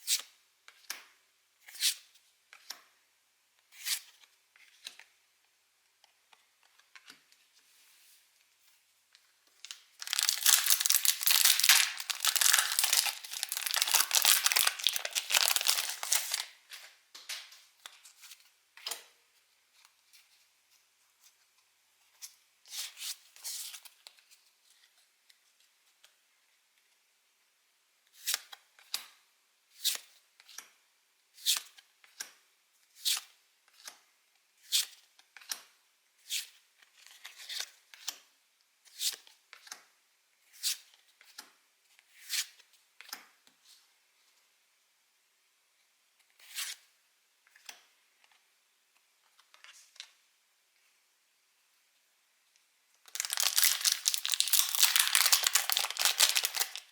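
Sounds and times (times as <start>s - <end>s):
foil wrapper crinkling and tearing: 9.6s - 16.5s, 53.0s - 56.9s.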